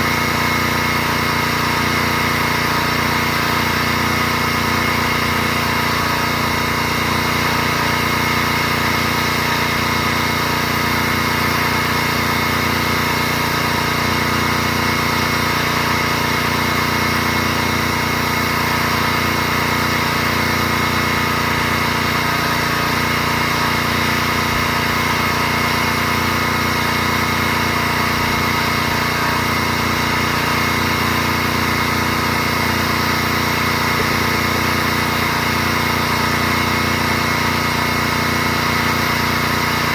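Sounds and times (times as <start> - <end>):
pressure washer running: 0.0 - 39.9.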